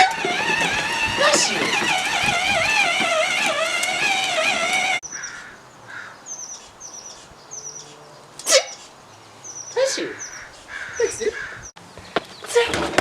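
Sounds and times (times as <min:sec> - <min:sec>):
small birds chirping: 0:00.8 - 0:12.6.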